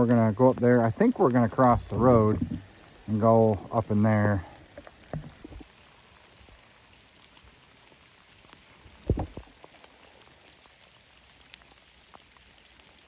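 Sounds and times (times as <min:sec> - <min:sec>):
light rain falling: 0:00.0 - 0:13.0.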